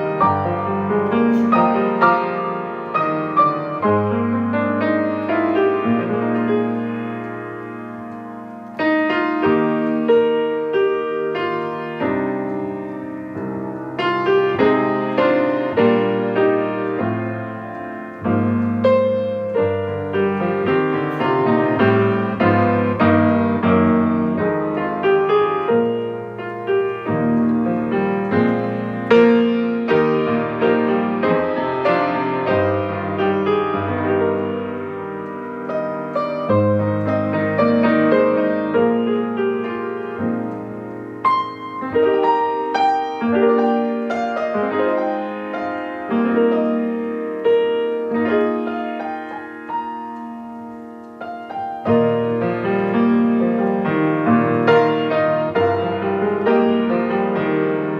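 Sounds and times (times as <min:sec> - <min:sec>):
solo piano: 0:00.0 - 0:57.9.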